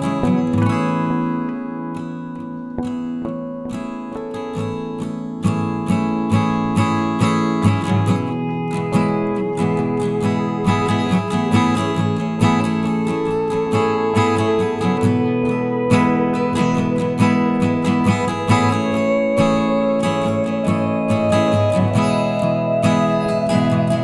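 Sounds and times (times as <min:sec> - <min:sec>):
acoustic guitar strumming: 0:00.0 - 0:24.0
held note: 0:07.8 - 0:24.0.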